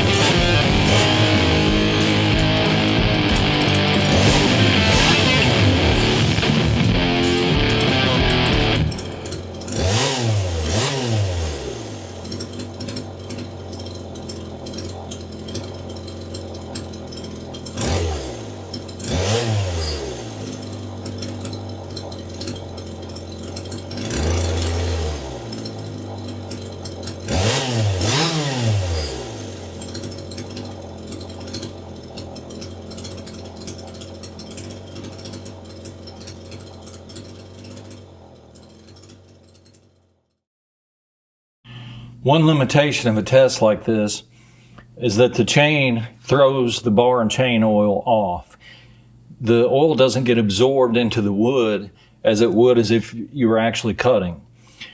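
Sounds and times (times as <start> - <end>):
rock guitar music: 0.0 - 9.7
chainsaw engine idling and revving: 0.0 - 40.3.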